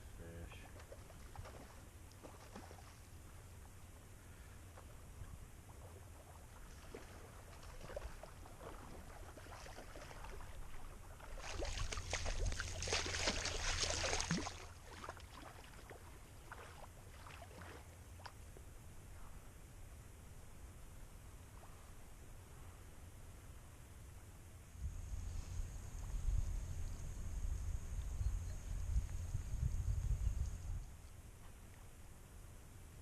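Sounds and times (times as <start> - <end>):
river water splashing: 0.6 - 3.7, 5.6 - 18.6.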